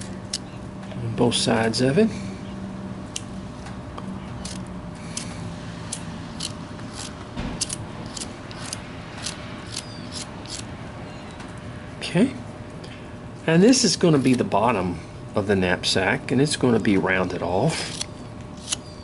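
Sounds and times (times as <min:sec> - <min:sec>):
faint steady hum: 0:00.0 - 0:19.0
knife shaving wood: 0:04.4 - 0:10.7, 0:17.7 - 0:18.9.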